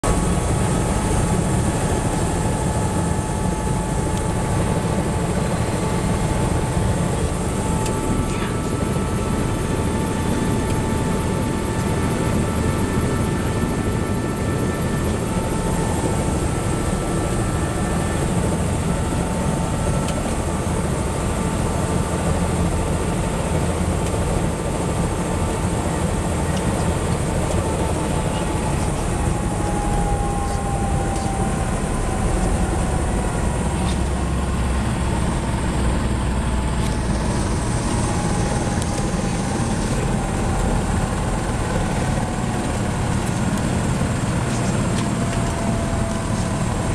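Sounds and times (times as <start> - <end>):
helicopter turbine and rotor: 0.0 - 46.9.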